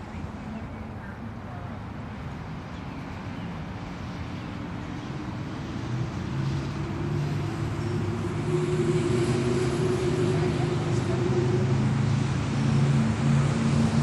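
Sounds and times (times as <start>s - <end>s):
crane engine revving: 4.7s - 14.0s.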